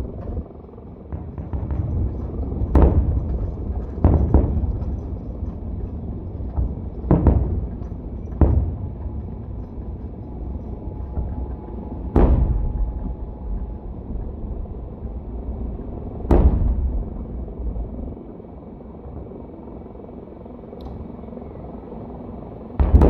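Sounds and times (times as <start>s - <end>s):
low background rumble: 0.0s - 23.0s
firework shells booming: 1.1s - 5.7s, 6.4s - 9.6s, 12.1s - 13.2s, 16.2s - 17.4s.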